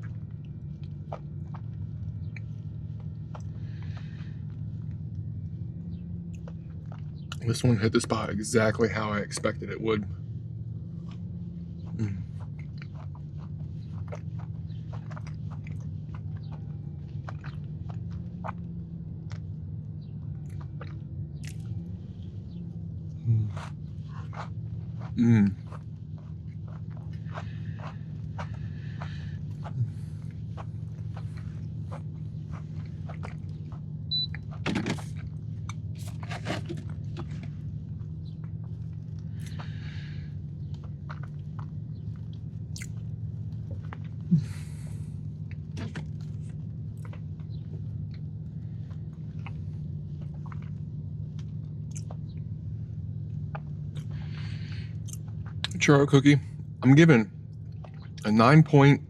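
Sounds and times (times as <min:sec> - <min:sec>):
chewing crunchy cookie: 0:00.0 - 0:59.0
steady low hum: 0:00.0 - 0:59.0
mouth clicks: 0:42.4 - 0:43.0.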